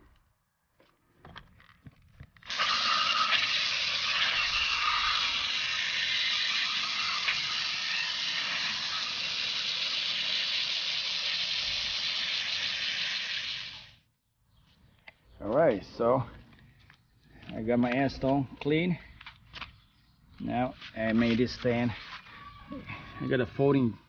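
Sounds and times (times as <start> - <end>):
water spraying: 2.4 - 14.0.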